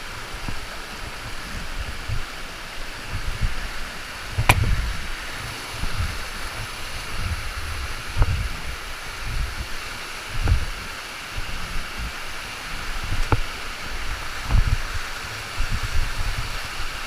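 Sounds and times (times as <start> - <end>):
waterfall rushing: 0.0 - 17.0
low thumps: 4.3 - 5.2, 5.8 - 10.8, 14.4 - 15.0.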